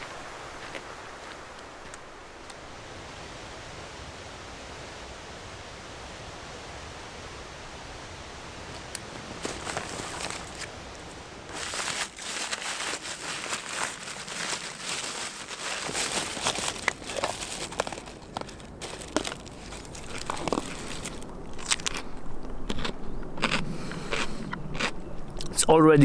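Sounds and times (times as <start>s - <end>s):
dense crinkling and crunching: 8.8s - 24.9s.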